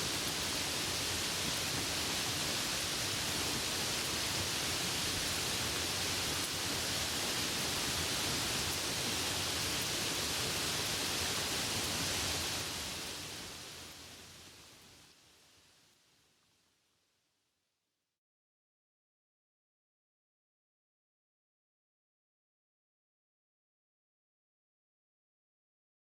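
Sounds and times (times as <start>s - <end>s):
steady rain falling: 0.0s - 17.3s.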